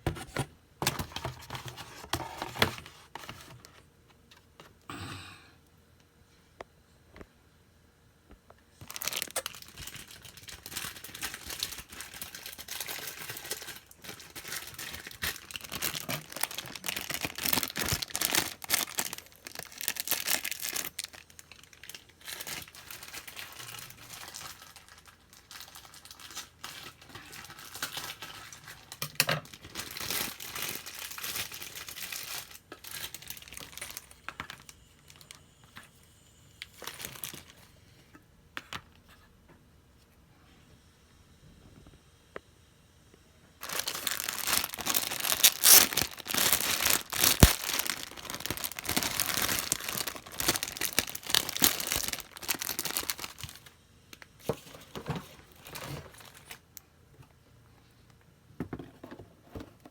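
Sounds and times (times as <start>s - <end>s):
plastic packaging crinkling and tearing: 8.8s - 35.4s, 36.6s - 37.7s, 43.6s - 56.7s.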